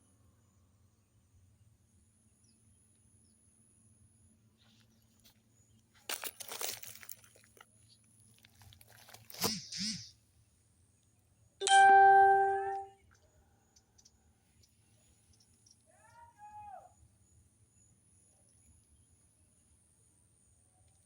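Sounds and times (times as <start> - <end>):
irregular crunching and rustling: 4.7 - 9.7.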